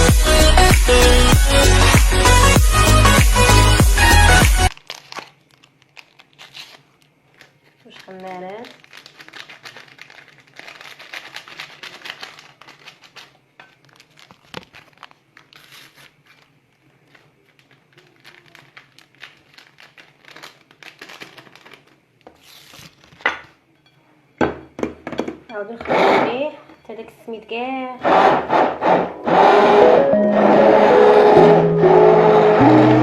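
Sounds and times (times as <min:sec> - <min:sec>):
paper and plastic sachets crinkling: 0:04.7 - 0:23.2.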